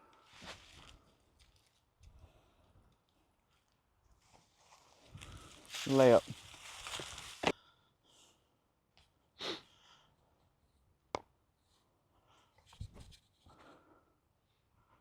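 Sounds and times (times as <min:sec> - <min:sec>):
short sniff: 0:09.4 - 0:09.7.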